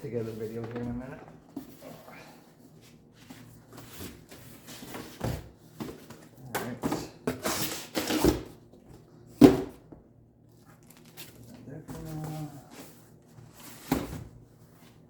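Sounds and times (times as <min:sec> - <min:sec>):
packaging rustling and scraping: 0:10.6 - 0:15.0.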